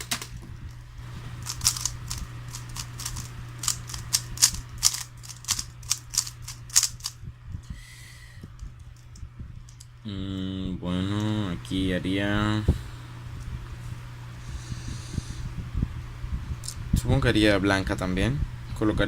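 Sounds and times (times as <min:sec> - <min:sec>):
low hum: 0:00.0 - 0:18.8
puzzle cube plastic clicks: 0:01.4 - 0:07.1.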